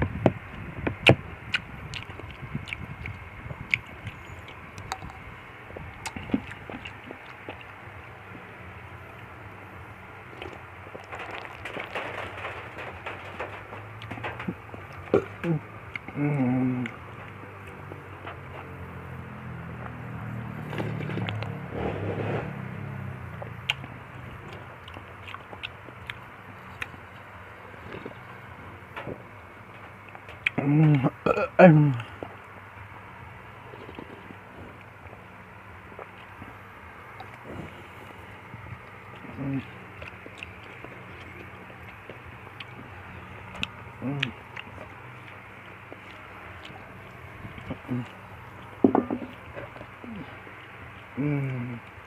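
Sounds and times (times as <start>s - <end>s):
low hum: 0.0s - 52.0s
chewing: 1.0s - 7.9s, 10.3s - 18.8s, 20.6s - 22.3s, 23.4s - 28.4s, 33.7s - 35.3s, 37.2s - 52.0s.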